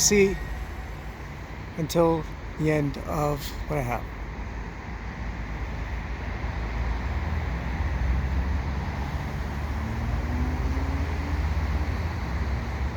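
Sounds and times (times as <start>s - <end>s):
faint rising tone: 0.0s - 1.8s
freight train rumbling: 0.0s - 12.9s.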